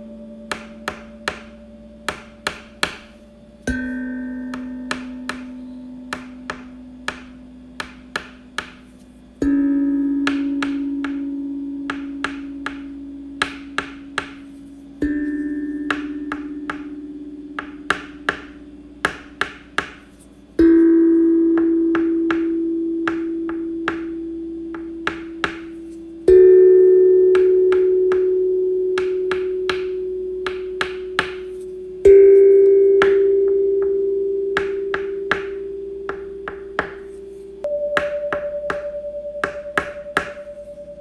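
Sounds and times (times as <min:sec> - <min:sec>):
ringing chime: 0:20.6 - 0:41.0.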